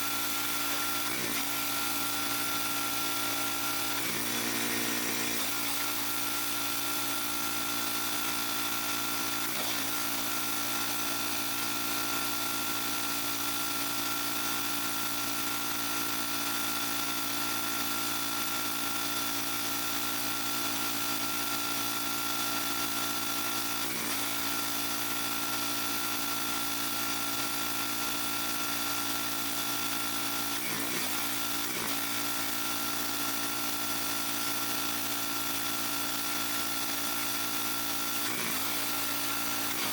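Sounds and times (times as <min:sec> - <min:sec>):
pressure washer engine humming: 0:00.0 - 0:08.1, 0:09.0 - 0:11.9, 0:30.4 - 0:33.7, 0:35.5 - 0:39.9.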